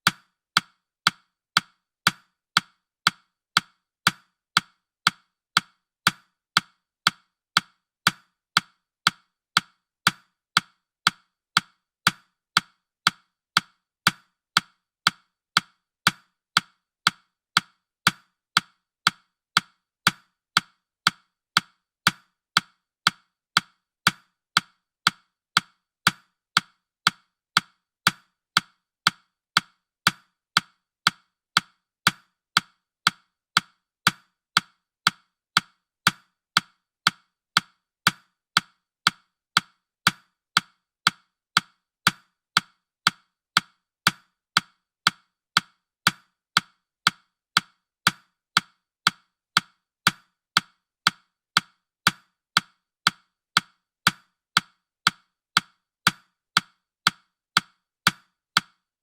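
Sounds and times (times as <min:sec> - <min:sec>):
clock ticks: 0:00.0 - 0:59.0.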